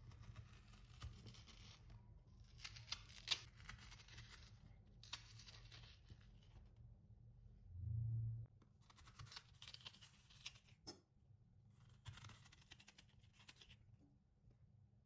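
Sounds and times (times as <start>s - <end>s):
faint scraping of turnip: 0.0s - 6.6s, 11.7s - 13.9s.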